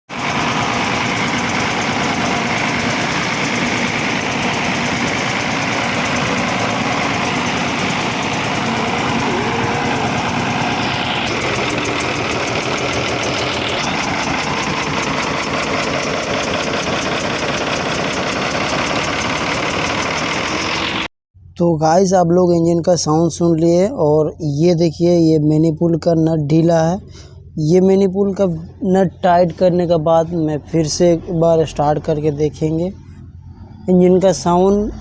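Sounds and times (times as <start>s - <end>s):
diesel engine idling: 0.1s - 21.1s
rapid even engine ticking: 0.1s - 21.1s.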